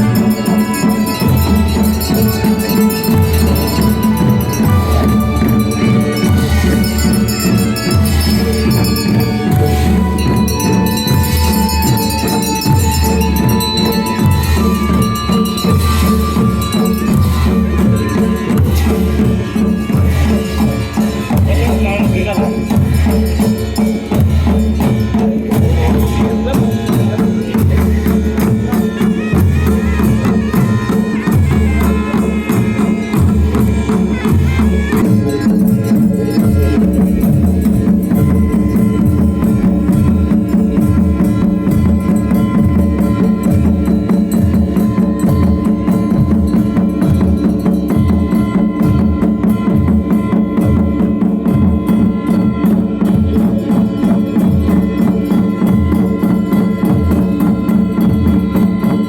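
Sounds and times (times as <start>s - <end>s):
high melodic line: 0.0s - 57.4s
drum beat with hand percussion: 0.0s - 59.0s.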